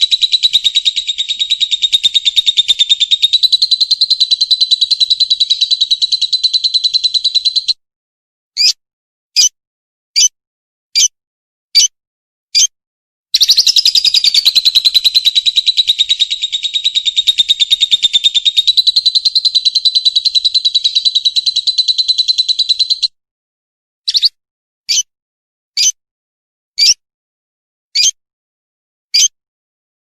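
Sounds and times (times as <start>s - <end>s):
lovebird chirping and trilling: 0.0s - 7.8s, 8.6s - 8.8s, 9.4s - 9.6s, 13.4s - 23.2s, 24.1s - 25.1s, 25.8s - 26.0s, 26.8s - 27.0s, 28.0s - 28.2s, 29.2s - 29.4s.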